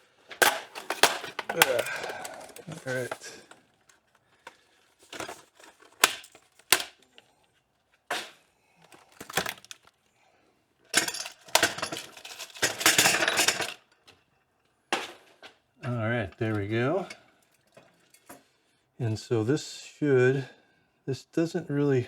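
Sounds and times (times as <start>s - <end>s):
packaging clicks and snaps: 0.4s - 7.2s, 8.1s - 10.0s
packaging crinkling and tearing: 0.5s - 7.1s, 8.9s - 10.0s.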